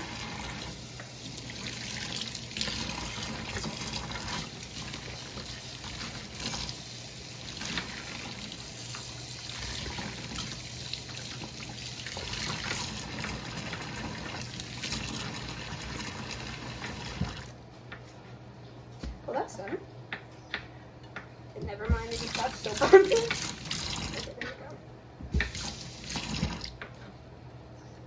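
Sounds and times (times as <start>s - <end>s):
pot washed by hand: 0.0s - 17.6s, 21.9s - 24.5s, 25.4s - 26.9s
tap running into sink: 25.2s - 26.9s.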